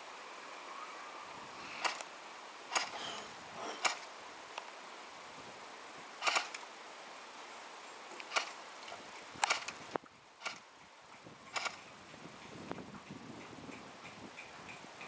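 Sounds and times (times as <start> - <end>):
steady hiss: 0.0 - 15.0.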